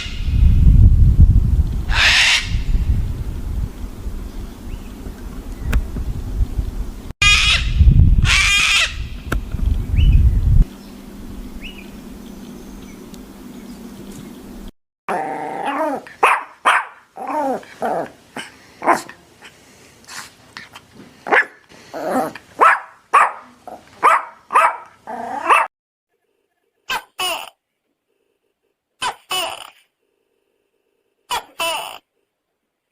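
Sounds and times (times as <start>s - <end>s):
low rumbling hum: 0.1s - 1.9s, 2.6s - 14.7s
dog barking and yelping: 15.1s - 19.2s, 21.3s - 25.7s.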